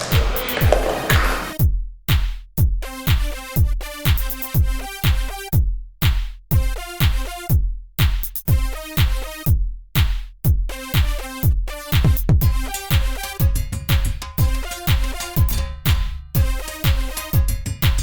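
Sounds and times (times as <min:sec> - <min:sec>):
kick drum: 0:00.0 - 0:18.0
repeating synth chords: 0:02.8 - 0:05.6, 0:06.5 - 0:07.6, 0:08.4 - 0:09.6, 0:10.7 - 0:18.0.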